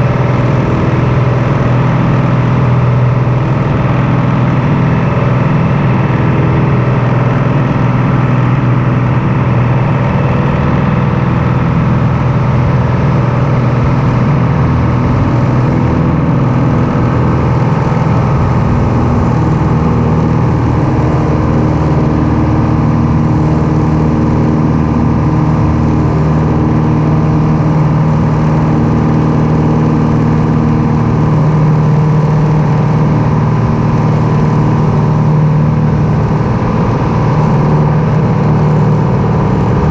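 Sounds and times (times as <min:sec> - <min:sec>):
aircraft piston engine drone: 0:00.0 - 0:39.9.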